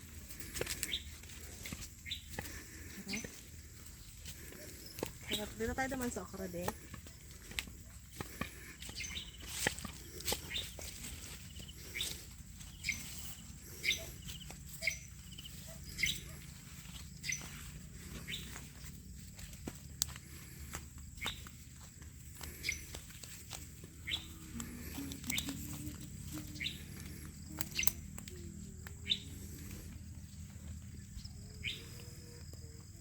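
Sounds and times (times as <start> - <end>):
footsteps on dry leaves: 0.0 - 32.2
faint bird chirps: 10.2 - 18.6, 24.0 - 30.0.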